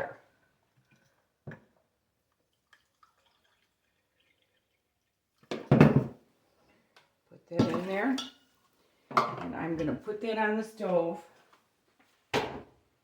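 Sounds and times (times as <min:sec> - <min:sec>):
water dripping: 0:00.7 - 0:05.5.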